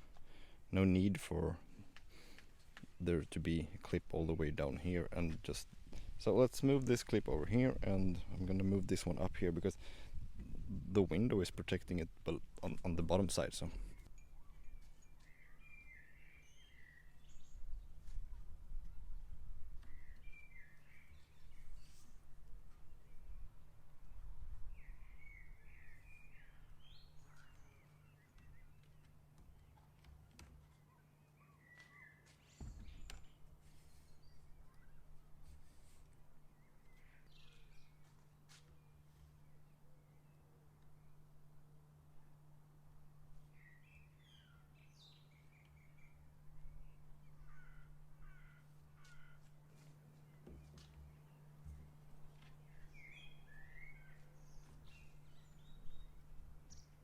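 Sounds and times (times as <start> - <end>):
birds chirping gliding calls: 13.6 - 17.9, 22.9 - 30.0, 30.7 - 41.2, 43.4 - 57.0.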